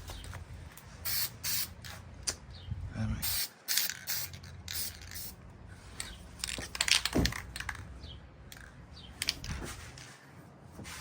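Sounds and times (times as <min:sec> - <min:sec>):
spray paint can hissing: 0:01.0 - 0:02.0, 0:03.2 - 0:05.4.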